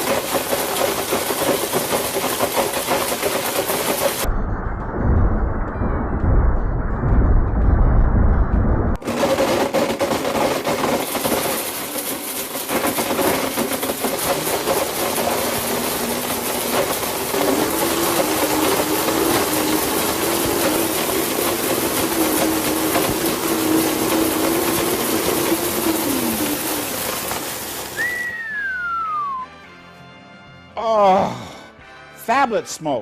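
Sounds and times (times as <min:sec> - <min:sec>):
blender motor whirring: 0:00.0 - 0:04.3, 0:09.0 - 0:29.4
gritty rattle of fragments: 0:00.0 - 0:04.3, 0:09.0 - 0:28.2.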